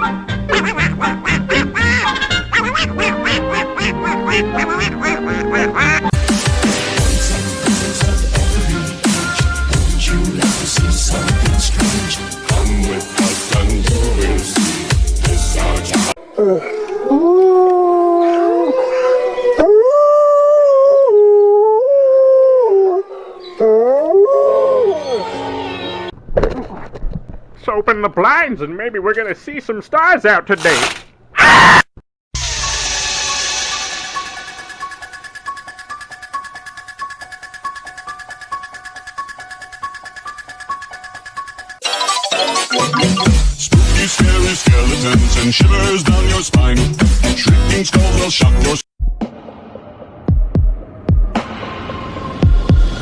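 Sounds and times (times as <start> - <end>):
electronic track with heavy bass: 6.1 - 16.2, 32.4 - 49.3
music with steady bass beat: 6.1 - 16.2, 42.9 - 49.3
dog howling: 16.2 - 25.5.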